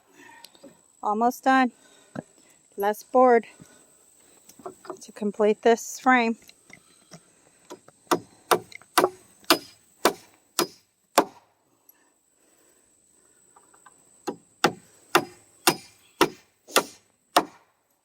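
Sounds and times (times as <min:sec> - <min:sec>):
hammer driving nails into wood: 0:07.7 - 0:11.4, 0:14.2 - 0:17.6.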